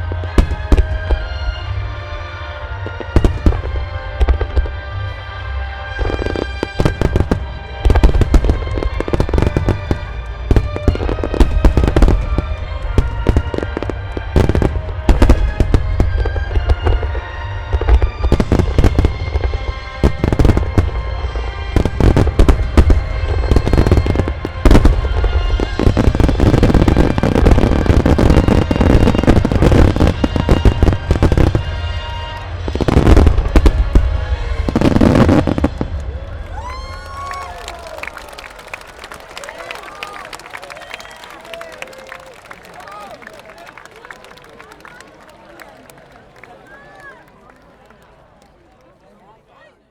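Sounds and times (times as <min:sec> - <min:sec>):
music: 0:00.0 - 0:45.0
fireworks bursting: 0:00.1 - 0:05.2, 0:06.0 - 0:40.2.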